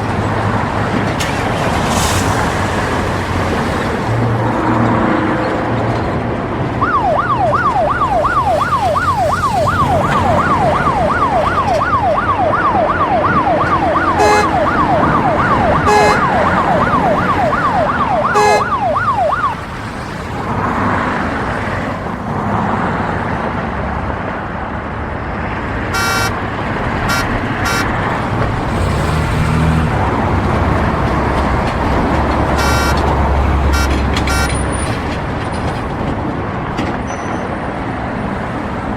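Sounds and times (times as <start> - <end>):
city street traffic: 0.0 - 38.9
heavy vehicle engine rumble: 0.0 - 38.9
yelping emergency siren: 6.8 - 19.7, 26.0 - 26.4, 27.1 - 27.9, 32.5 - 34.6
car horn honks: 14.0 - 15.0, 15.6 - 16.8, 18.1 - 19.1, 26.0 - 26.4, 27.0 - 28.0, 32.5 - 34.6.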